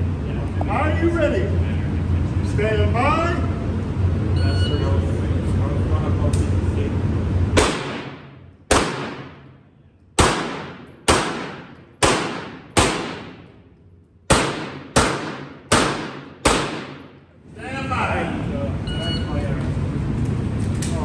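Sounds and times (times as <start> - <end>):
pistol shots with echo: 7.6 - 9.5, 10.2 - 13.5, 14.3 - 17.2.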